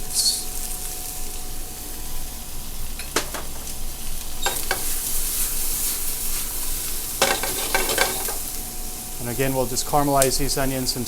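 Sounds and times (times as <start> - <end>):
onions sizzling in a pan: 0.0 - 11.0
utensil knocking on pan: 7.2 - 8.5.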